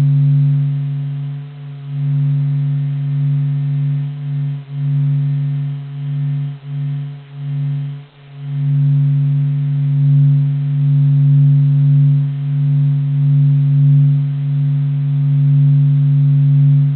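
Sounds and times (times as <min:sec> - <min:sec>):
low electronic drone: 0:00.0 - 0:16.9.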